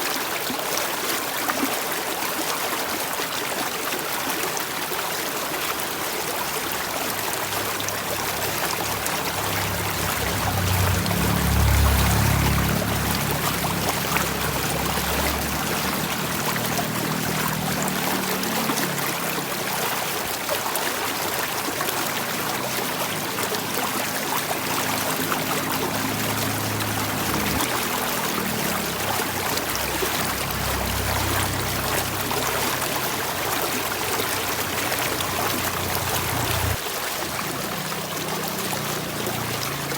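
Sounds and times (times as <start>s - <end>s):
water flowing over stones: 0.0s - 39.9s
low hum: 7.5s - 17.0s.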